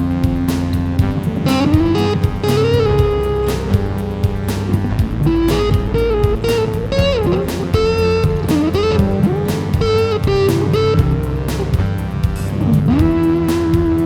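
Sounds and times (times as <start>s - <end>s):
electric guitar lead: 0.0s - 11.9s
bass guitar: 0.0s - 14.0s
drums: 0.0s - 14.0s.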